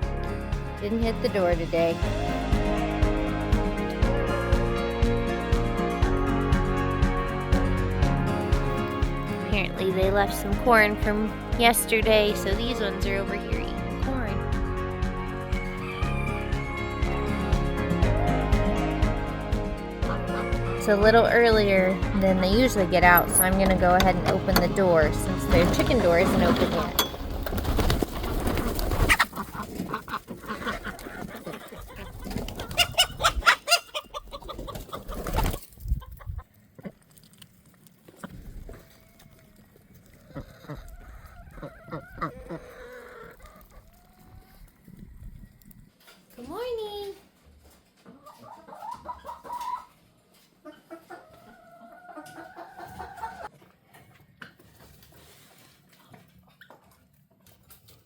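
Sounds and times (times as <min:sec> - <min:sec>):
chickens clucking: 0:15.4 - 0:37.4, 0:38.0 - 0:46.2, 0:47.6 - 0:58.0.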